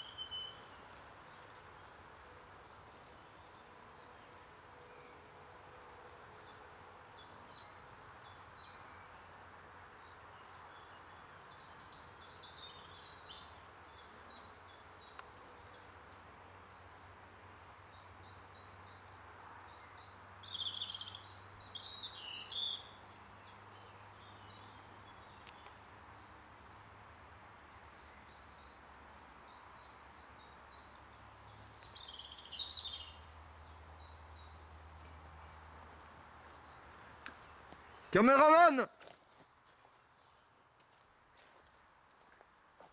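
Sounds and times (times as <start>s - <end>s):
bird warbling song: 0.0s - 0.8s, 19.8s - 25.7s, 27.6s - 34.6s
steady low hiss: 0.0s - 42.9s.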